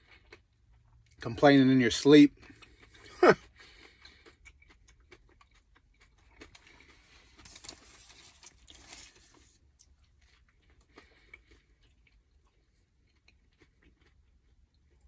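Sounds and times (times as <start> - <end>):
person chewing food: 0.0 - 1.0, 2.5 - 7.9, 9.6 - 15.0.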